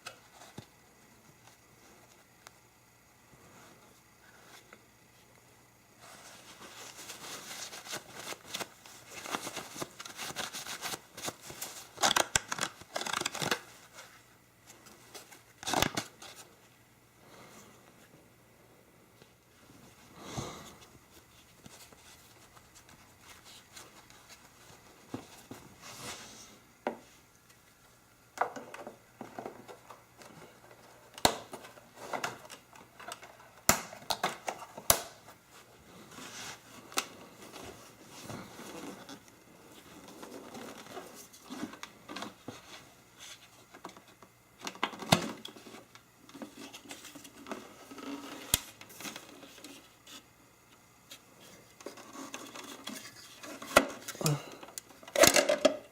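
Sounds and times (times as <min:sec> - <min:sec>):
sharp plastic snaps: 0:33.6 - 0:35.2
plastic parts clicking and knocking: 0:51.9 - 0:55.9.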